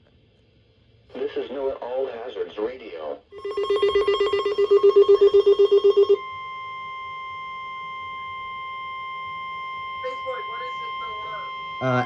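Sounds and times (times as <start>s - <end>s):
steady warning alarm tone: 3.3s - 12.0s.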